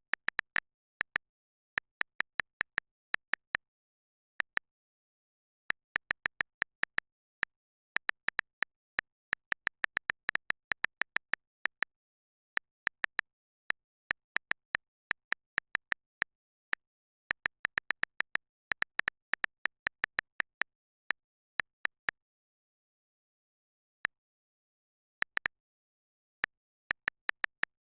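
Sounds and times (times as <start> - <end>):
phone keyboard ticks: 0.0 - 22.2, 25.0 - 27.9.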